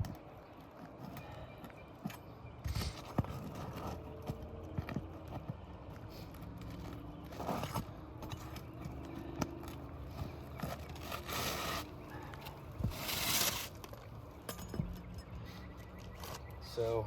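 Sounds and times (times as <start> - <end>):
tool scraping under shingles: 10.1 - 14.0.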